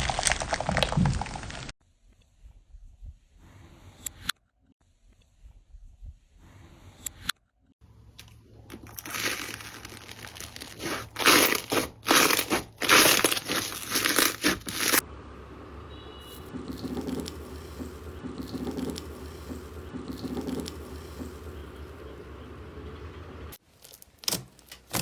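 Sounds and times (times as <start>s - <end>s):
slime crackling when squeezed: 8.8s - 15.0s.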